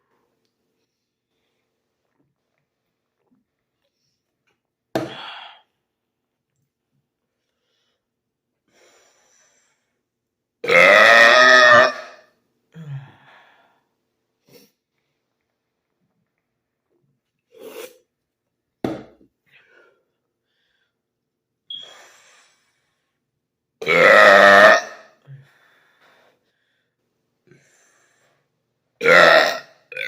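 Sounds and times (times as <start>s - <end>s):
man burping loudly: 10.6s - 12.2s, 23.8s - 25.1s, 29.0s - 30.0s.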